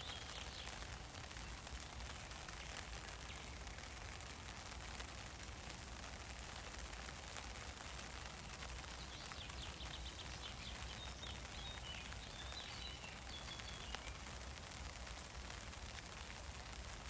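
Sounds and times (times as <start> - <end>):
rain on an umbrella: 0.0 - 17.0
bird chirping: 9.0 - 14.2.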